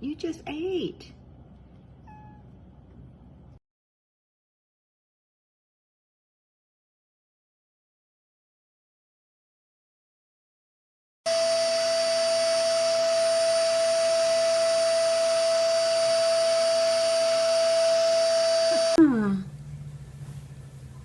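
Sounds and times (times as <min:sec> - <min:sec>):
small electric motor whine: 0:11.3 - 0:19.0
low hum: 0:11.3 - 0:21.0.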